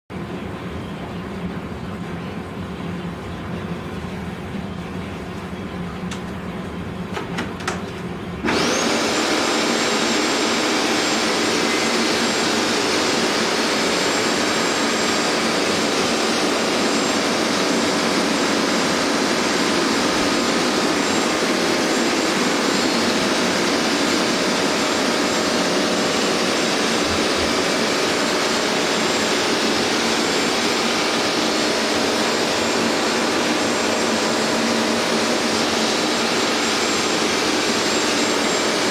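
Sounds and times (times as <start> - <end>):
carpet cleaner suction motor whining: 8.4 - 38.9.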